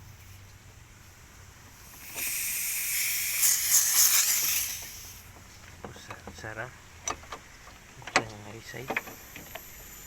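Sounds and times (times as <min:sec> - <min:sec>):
refrigerant hissing from hose: 0:01.0 - 0:05.3.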